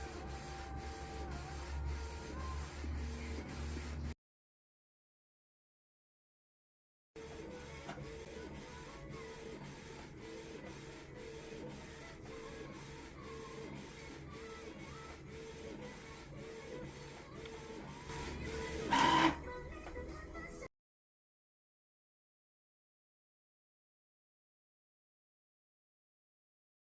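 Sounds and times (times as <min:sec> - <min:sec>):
printer mechanical pulse and hum: 0:00.0 - 0:04.2, 0:07.2 - 0:19.4.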